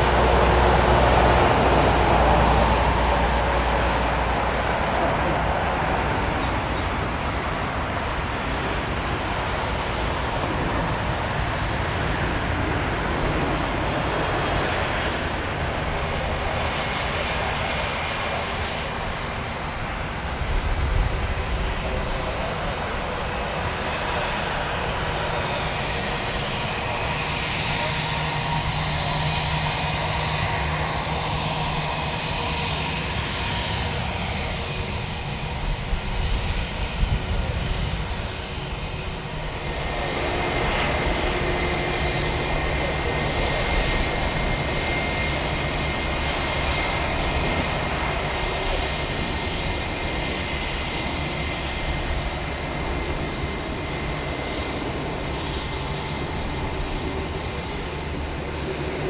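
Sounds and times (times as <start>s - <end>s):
jet engines rushing and whining: 0.0s - 59.0s
low gusty rumbles: 0.0s - 59.0s.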